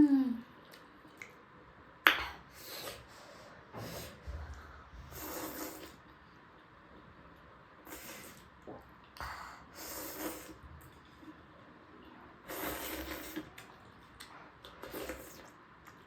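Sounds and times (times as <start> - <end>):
noisy breaths through nose: 2.4 - 6.0
person chewing food: 12.5 - 16.0.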